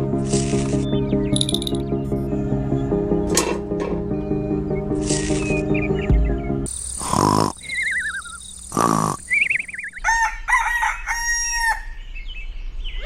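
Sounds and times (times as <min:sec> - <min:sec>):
rooster crowing: 0:10.0 - 0:12.0.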